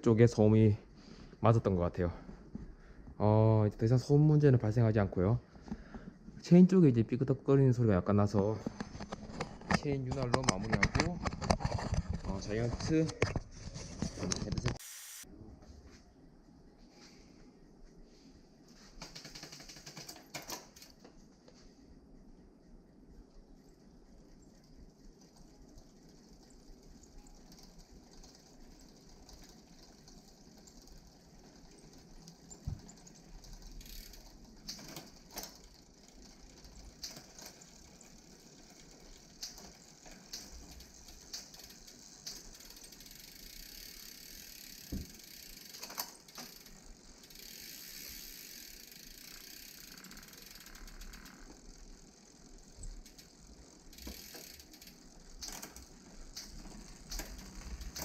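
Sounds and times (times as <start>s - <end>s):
bicycle hub clicking: 19.0s - 21.0s, 23.6s - 58.0s.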